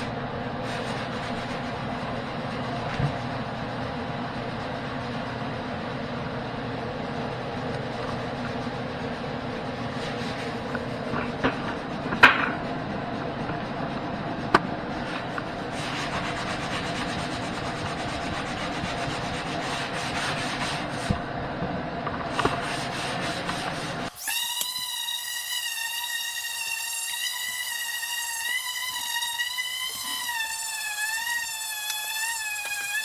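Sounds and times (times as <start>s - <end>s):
hand tool scraping wall: 14.9s - 21.2s, 22.3s - 33.0s.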